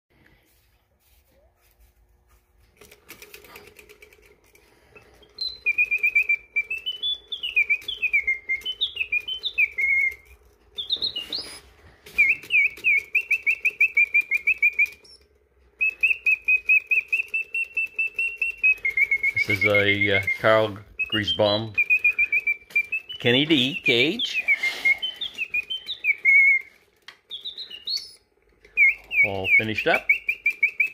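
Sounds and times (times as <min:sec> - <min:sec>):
clockwork mechanism whirring: 0:02.8 - 0:30.9
mechanical bird whistle warbling: 0:05.2 - 0:30.9.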